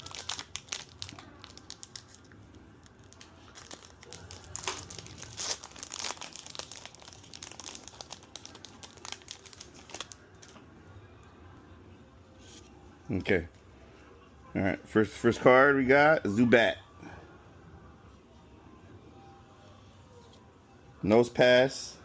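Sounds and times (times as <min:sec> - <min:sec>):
foil wrapper tearing and crinkling: 0:00.0 - 0:10.5.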